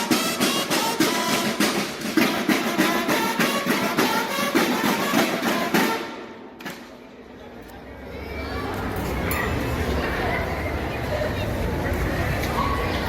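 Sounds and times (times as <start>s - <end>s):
snare and bass drums: 0.0s - 6.2s
bugles sounding a march: 0.0s - 6.3s.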